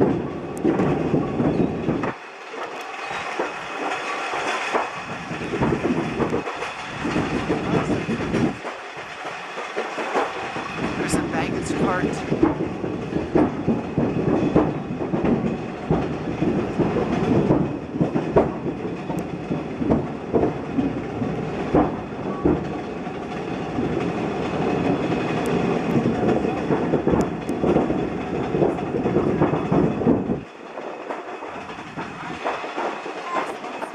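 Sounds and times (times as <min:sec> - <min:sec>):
railroad equipment rumbling: 0:00.0 - 0:33.9.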